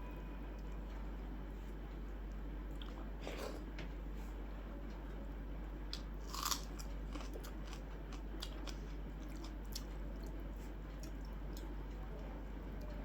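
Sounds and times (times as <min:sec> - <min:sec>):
food crunch: 0:05.9 - 0:10.0
person chewing: 0:05.9 - 0:11.8.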